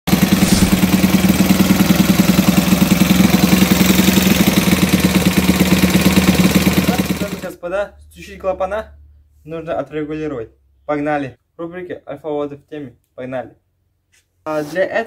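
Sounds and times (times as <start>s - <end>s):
moped engine idling: 0.1s - 7.5s.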